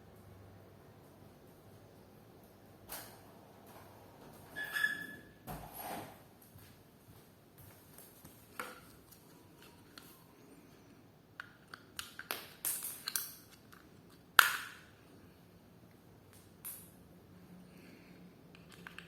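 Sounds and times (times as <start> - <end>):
small plastic parts clicking: 18.5 - 19.0.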